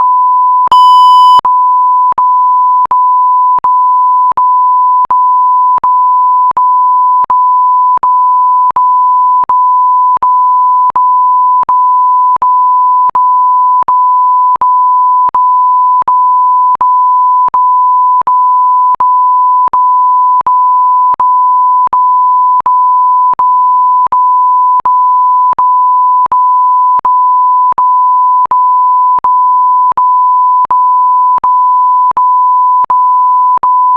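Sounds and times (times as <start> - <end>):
steady mid-pitched beep: 0.0 - 15.5
higher-pitched beep: 0.7 - 1.4.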